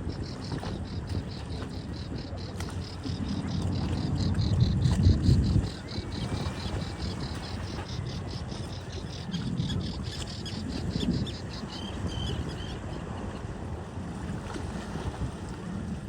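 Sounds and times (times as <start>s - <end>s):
surf rumble: 0.0s - 16.0s
wind on microphone: 0.0s - 16.0s.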